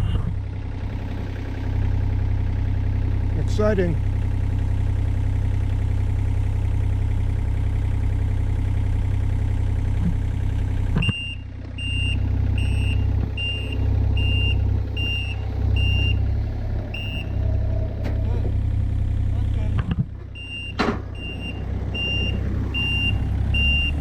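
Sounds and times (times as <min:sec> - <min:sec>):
heavy machinery engine running: 0:00.0 - 0:24.0
backup alarm beeping: 0:11.0 - 0:16.2, 0:16.9 - 0:17.4, 0:20.4 - 0:24.0.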